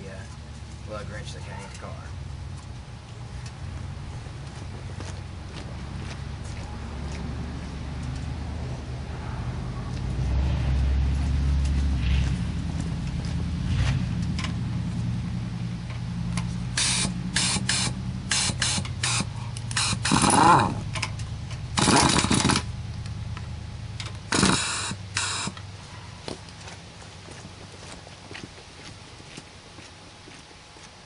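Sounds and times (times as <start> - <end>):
impact wrench bursts: 16.7 - 22.7, 24.0 - 25.6.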